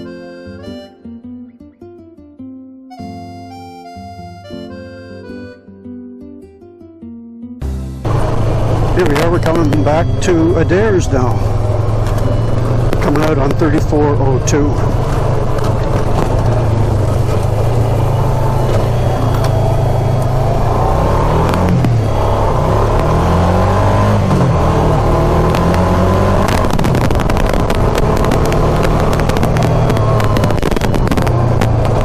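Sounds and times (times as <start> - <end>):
atv engine running: 7.6 - 32.0
sharp clicks and rattles: 11.4 - 17.9, 25.4 - 32.0.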